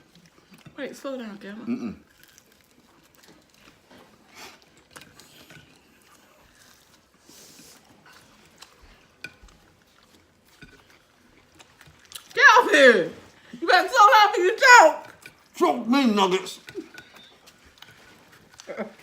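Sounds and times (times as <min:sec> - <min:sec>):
chewing and mouth clicks: 0:00.0 - 0:00.8, 0:02.0 - 0:12.4, 0:15.0 - 0:15.6, 0:16.6 - 0:19.0.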